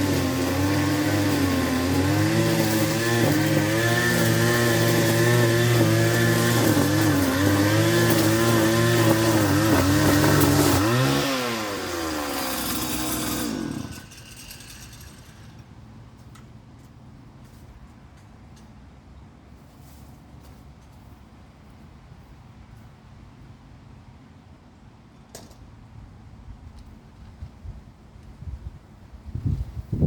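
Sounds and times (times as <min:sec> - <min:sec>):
lawn mower engine running: 0:00.0 - 0:15.6.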